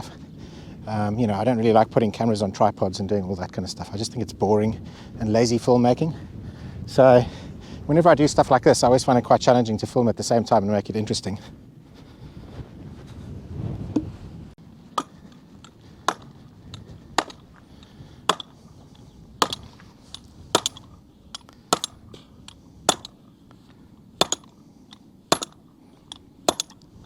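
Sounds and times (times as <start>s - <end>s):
hammer striking fence pole: 15.0s - 16.4s, 17.2s - 17.4s, 18.3s - 18.6s, 19.4s - 22.3s, 22.9s - 23.2s, 24.2s - 26.8s.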